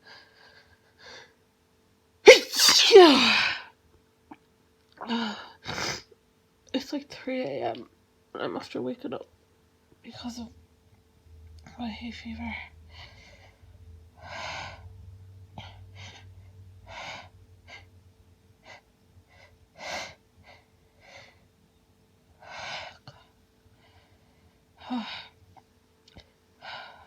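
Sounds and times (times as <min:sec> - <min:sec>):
woman sneezing: 0:02.3 - 0:03.7.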